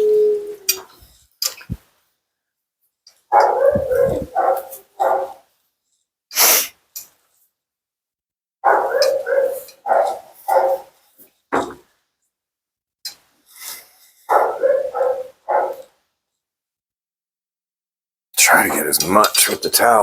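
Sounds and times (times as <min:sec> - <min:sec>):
husky woo-woo calls: 0:00.0 - 0:01.0, 0:03.3 - 0:05.4, 0:08.7 - 0:10.8, 0:14.3 - 0:15.8.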